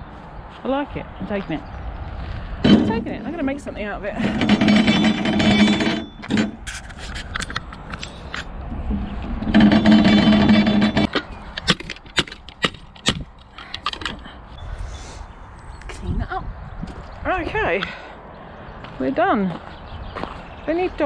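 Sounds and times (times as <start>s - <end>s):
metallic knocks and clanks: 2.6s - 3.6s, 4.2s - 14.3s
metal scrap scraping with ring: 4.2s - 11.2s.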